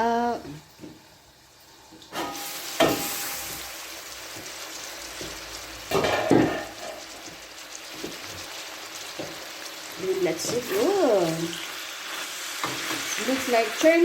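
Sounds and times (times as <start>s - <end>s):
chicken sizzling in a pan: 0.0s - 14.0s
metal clatter against pan: 5.9s - 7.0s.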